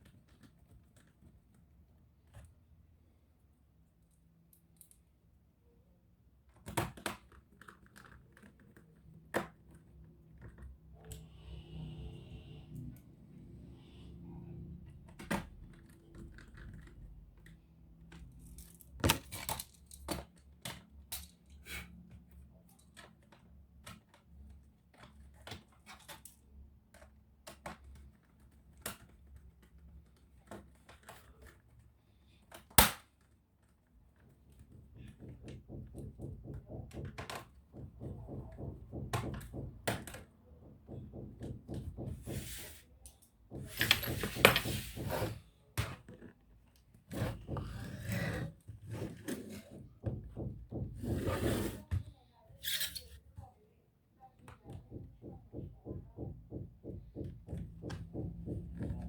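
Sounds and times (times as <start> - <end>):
tools clicking and tapping: 34.6 - 45.3, 54.4 - 59.0.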